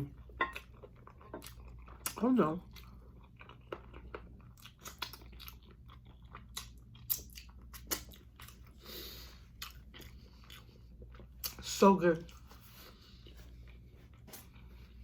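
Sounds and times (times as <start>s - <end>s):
person chewing wet mouth smacks: 1.4s - 8.7s.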